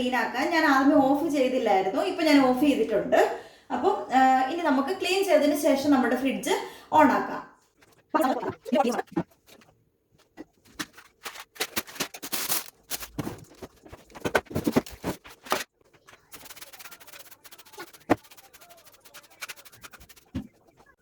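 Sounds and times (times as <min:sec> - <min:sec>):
spray bottle squirting: 0:16.3 - 0:20.4.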